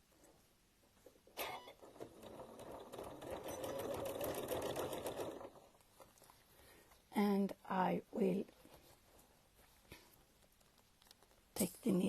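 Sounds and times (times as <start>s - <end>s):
sewing machine stitching: 1.4s - 5.8s.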